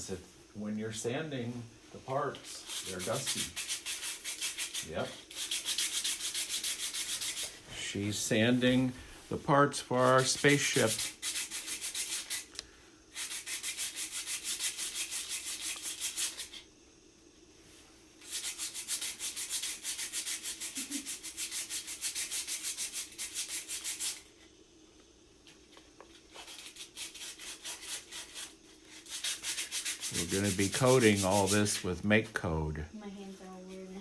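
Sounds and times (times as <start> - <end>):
sandpaper rubbing on plastic: 2.4 - 7.5, 10.0 - 12.5, 13.2 - 16.6, 18.2 - 24.3, 26.3 - 31.9.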